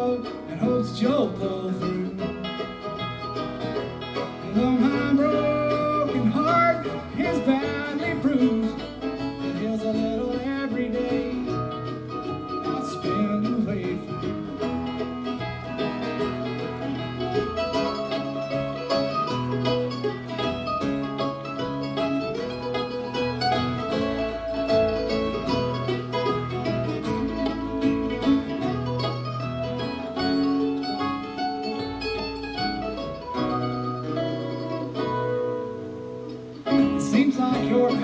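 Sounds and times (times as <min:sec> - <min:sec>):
bluegrass band playing: 0:00.0 - 0:38.0.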